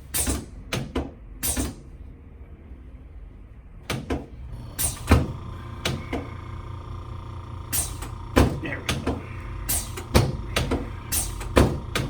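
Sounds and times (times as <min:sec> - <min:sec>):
faint steady hum: 0:04.3 - 0:12.0.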